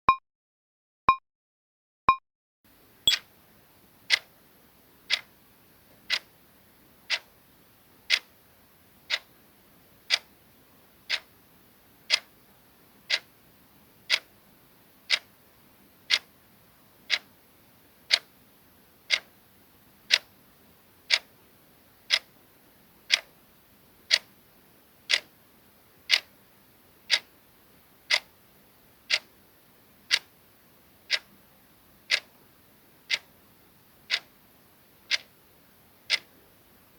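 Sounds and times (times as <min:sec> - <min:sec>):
clock ticking: 0:06.1 - 0:06.3, 0:07.1 - 0:07.3, 0:08.1 - 0:08.3, 0:09.1 - 0:09.3, 0:10.1 - 0:10.3, 0:11.1 - 0:11.3, 0:12.1 - 0:12.3, 0:13.1 - 0:13.3, 0:14.1 - 0:14.3, 0:16.1 - 0:16.3, 0:18.1 - 0:18.3, 0:19.1 - 0:19.3, 0:20.1 - 0:20.3, 0:21.1 - 0:21.3, 0:22.1 - 0:22.3, 0:23.1 - 0:23.3, 0:24.1 - 0:24.3, 0:25.1 - 0:25.3, 0:26.1 - 0:26.3, 0:27.1 - 0:27.3, 0:28.1 - 0:28.3, 0:29.1 - 0:29.3, 0:30.1 - 0:30.3, 0:31.1 - 0:31.3, 0:32.1 - 0:32.3, 0:33.1 - 0:33.3, 0:34.1 - 0:34.3, 0:35.1 - 0:35.3, 0:36.1 - 0:36.3.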